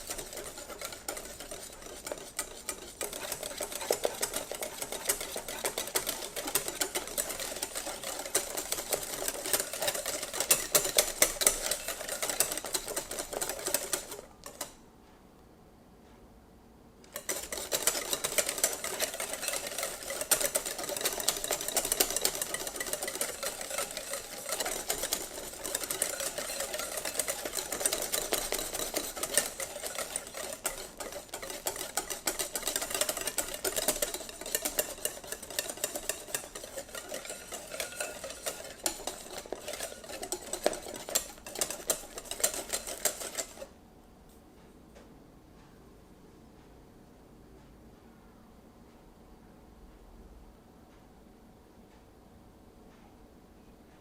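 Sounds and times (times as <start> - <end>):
utensil whisking against bowl: 0.0 - 14.8, 17.1 - 43.8.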